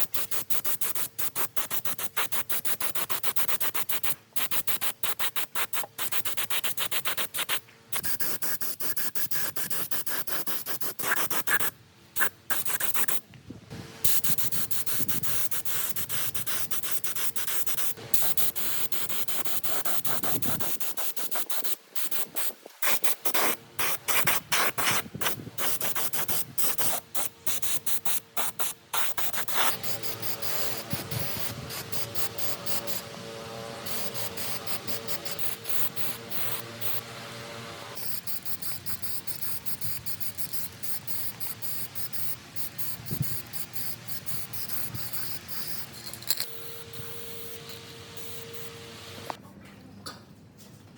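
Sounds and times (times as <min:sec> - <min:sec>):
smooth steady hiss: 0:13.2 - 0:49.4
sanding metal scraping strokes: 0:14.1 - 0:49.4
faint hum: 0:41.5 - 0:50.4.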